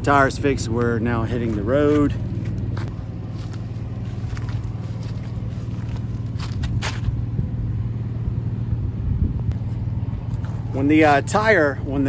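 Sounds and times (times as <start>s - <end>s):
truck engine running: 0.0s - 12.0s.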